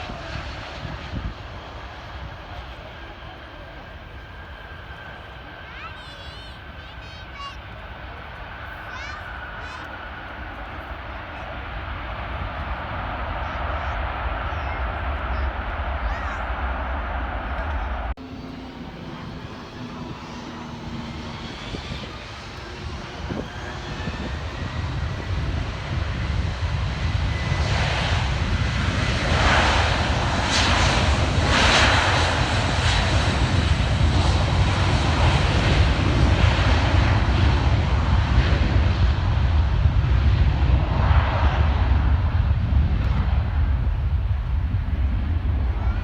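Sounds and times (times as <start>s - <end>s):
jet airliner engine rumble: 0.0s - 46.0s.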